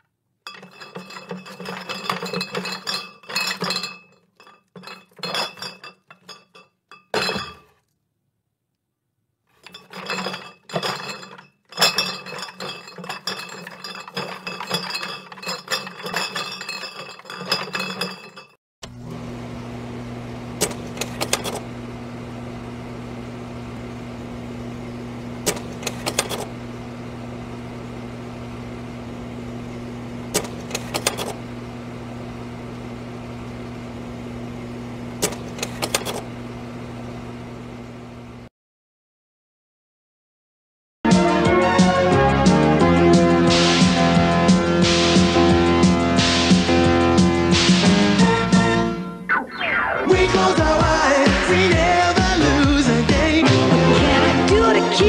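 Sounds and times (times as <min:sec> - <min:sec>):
glass clinking: 0:00.4 - 0:07.8, 0:09.6 - 0:18.6
electrical hum: 0:09.7 - 0:38.5.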